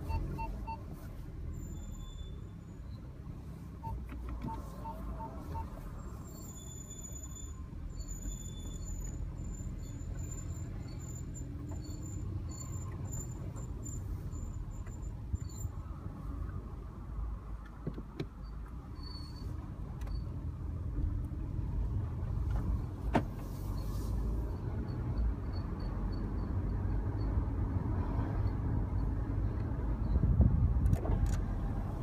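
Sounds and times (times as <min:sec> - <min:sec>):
high-pitched brake squeal chirps: 0:00.0 - 0:03.1, 0:03.8 - 0:16.0, 0:18.4 - 0:20.4, 0:23.5 - 0:27.5
car rolling rumble: 0:00.0 - 0:32.0.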